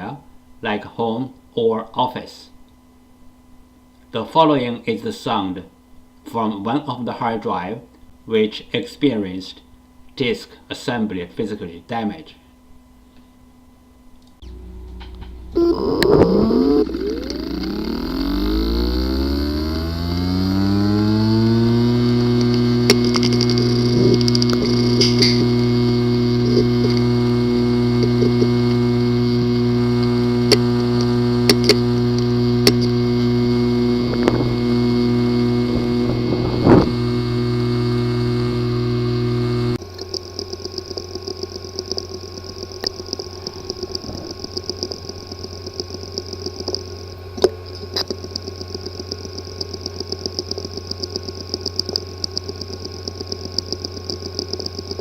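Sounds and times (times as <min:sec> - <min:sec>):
hard disk drive buzzing hum: 0:00.0 - 0:55.0
hard disk drive clicks: 0:14.3 - 0:55.0
fast light ticking: 0:16.5 - 0:36.0, 0:37.0 - 0:55.0.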